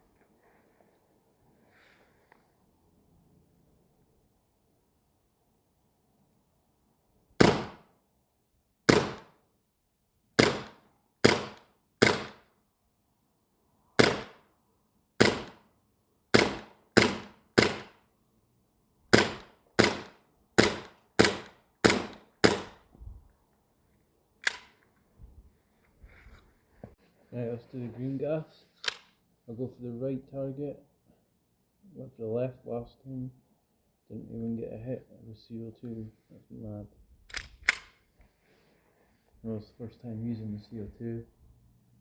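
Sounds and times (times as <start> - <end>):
airsoft pistol shots: 7.4 - 7.9, 8.9 - 9.4, 10.4 - 12.4, 14.0 - 14.4, 15.2 - 15.6, 16.3 - 18.0, 19.1 - 22.8.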